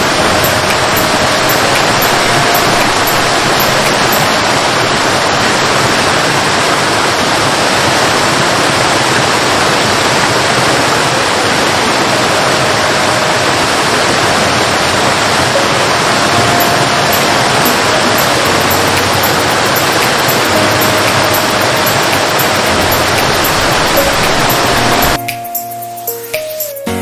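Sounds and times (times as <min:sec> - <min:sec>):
rush of flowing water: 0:00.0 - 0:25.2.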